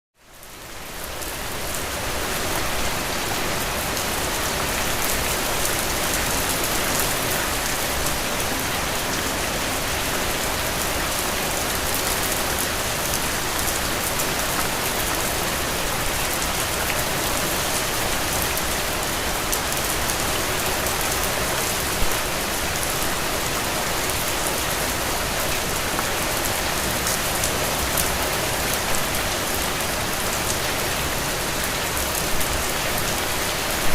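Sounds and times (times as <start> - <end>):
steady rain falling: 0.2 - 33.9.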